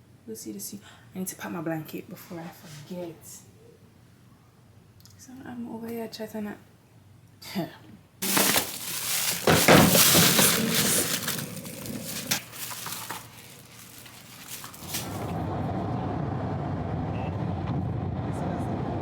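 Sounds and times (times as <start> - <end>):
rustling and clattering: 8.2 - 15.4
car interior hum: 14.8 - 19.0.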